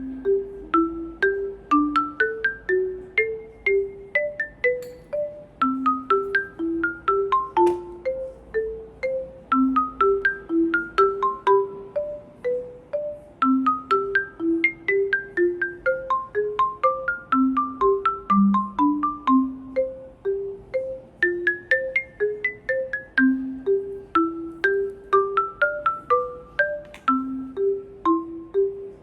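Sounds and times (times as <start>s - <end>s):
marimba and glockenspiel melody: 0.0s - 29.0s.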